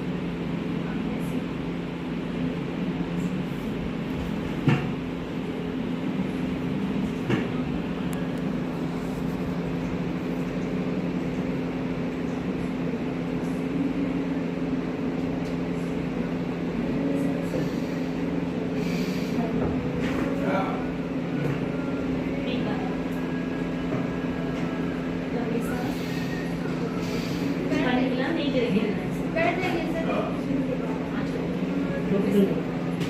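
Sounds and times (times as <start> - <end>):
low machine hum: 0.0 - 33.0.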